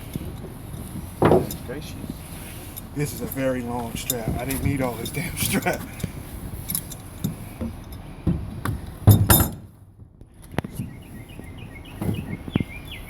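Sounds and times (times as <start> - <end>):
strap hardware clinking: 0.0 - 1.7, 2.7 - 8.1, 8.7 - 9.6
metal rattling clatters: 2.7 - 9.7.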